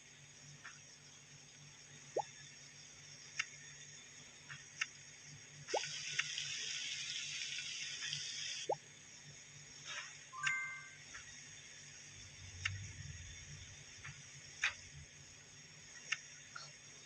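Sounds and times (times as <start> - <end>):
steady hiss: 0.0 - 17.0
water drops plinking: 10.4 - 11.0.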